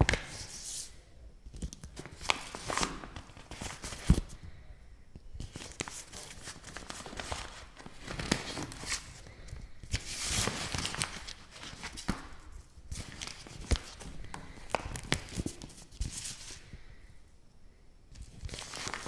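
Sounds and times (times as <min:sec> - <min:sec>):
paper crinkling: 0:01.6 - 0:04.3, 0:05.4 - 0:16.7, 0:18.2 - 0:19.0.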